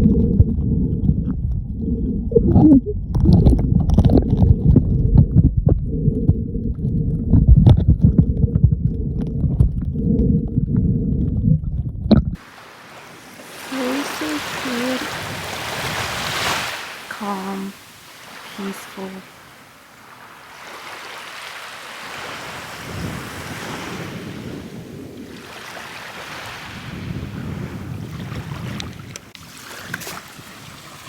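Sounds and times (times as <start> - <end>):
bubbly clicks: 0.0 - 12.4
muffled underwater rumbling: 0.0 - 12.4
rushing hiss of water: 12.4 - 20.0.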